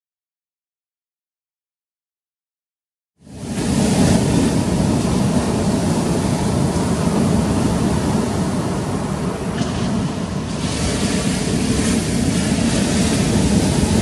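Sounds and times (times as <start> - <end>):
ocean surf breaking: 3.2 - 14.0
wind rumbling on microphone: 3.2 - 14.0.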